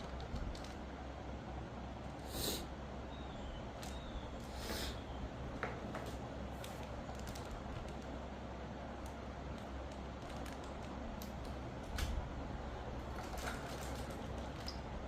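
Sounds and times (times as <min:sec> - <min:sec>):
mechanical keyboard keys clicking: 0:00.0 - 0:00.8, 0:09.0 - 0:12.2.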